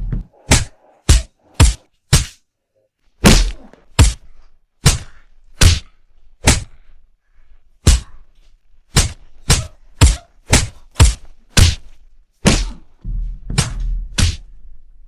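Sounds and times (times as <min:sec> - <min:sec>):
punch and kick impacts: 0:00.0 - 0:02.4, 0:03.2 - 0:06.8, 0:07.8 - 0:08.2, 0:08.9 - 0:14.5.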